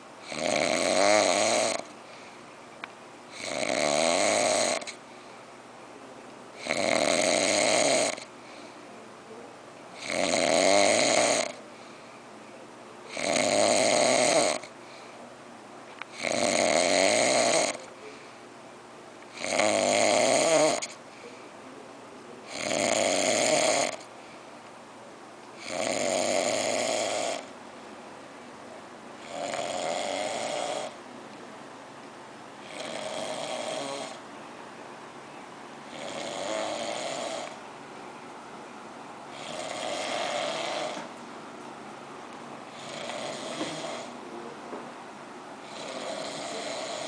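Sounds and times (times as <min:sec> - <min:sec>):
person snoring loudly: 0:00.2 - 0:01.9, 0:03.3 - 0:05.0, 0:06.6 - 0:08.3, 0:10.0 - 0:11.6, 0:13.1 - 0:14.7, 0:16.2 - 0:17.9, 0:19.3 - 0:21.0, 0:22.5 - 0:24.1, 0:25.6 - 0:27.5, 0:29.2 - 0:31.0, 0:32.6 - 0:34.2, 0:35.9 - 0:37.6, 0:39.3 - 0:41.1, 0:42.7 - 0:44.2, 0:45.6 - 0:47.0.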